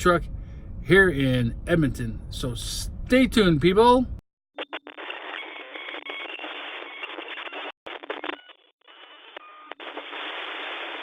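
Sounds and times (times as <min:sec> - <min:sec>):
radio static hiss: 0:04.6 - 0:11.0.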